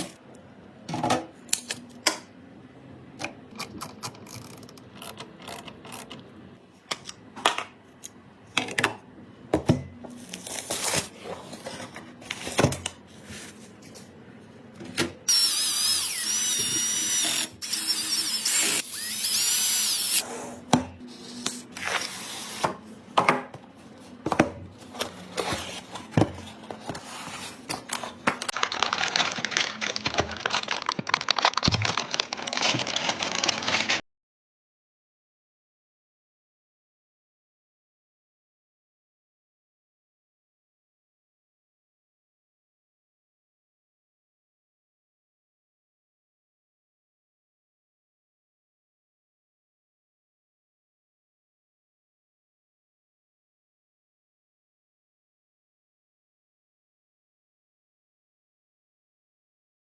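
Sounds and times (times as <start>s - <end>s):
computer parts clicking: 3.5s - 6.3s
electric screwdriver whining: 15.3s - 20.2s.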